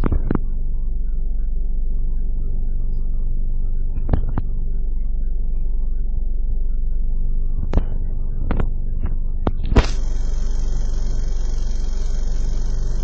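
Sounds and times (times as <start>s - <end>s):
sharp clicks: 9.7s - 13.0s
steady hiss: 9.8s - 13.0s
car engine idling: 9.9s - 13.0s.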